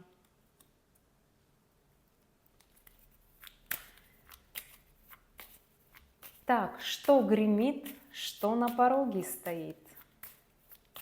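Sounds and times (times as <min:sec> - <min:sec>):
cards flicking and rustling: 0:02.5 - 0:11.0.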